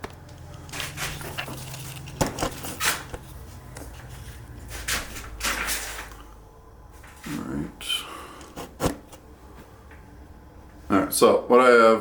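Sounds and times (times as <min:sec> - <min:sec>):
tools and hardware handled: 0:00.5 - 0:06.2.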